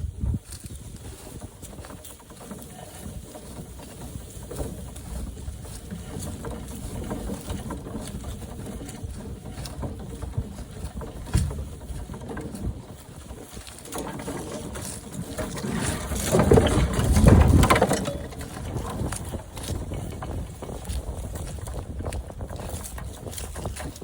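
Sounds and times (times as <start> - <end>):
wheelbarrow load rattling: 0.0 - 24.0
wheelbarrow wheel rumbling: 0.0 - 24.0.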